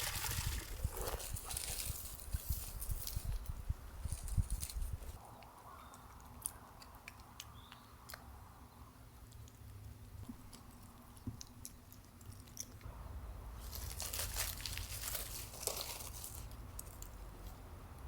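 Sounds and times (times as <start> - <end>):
crinkling and crunching: 0.0 - 5.2, 13.6 - 17.6.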